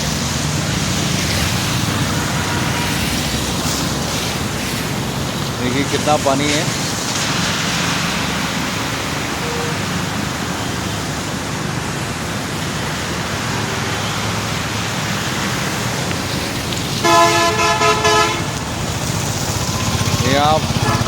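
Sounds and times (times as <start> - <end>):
traffic driving through water: 0.0 - 21.0
vehicle horn honking: 9.4 - 9.8, 17.0 - 18.5, 20.7 - 21.0.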